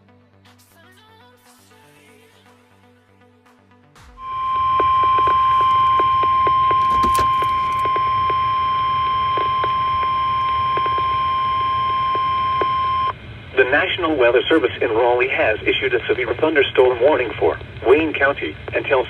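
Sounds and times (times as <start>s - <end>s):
steady warning alarm tone: 4.2s - 13.2s
faint static clicks: 4.2s - 19.0s.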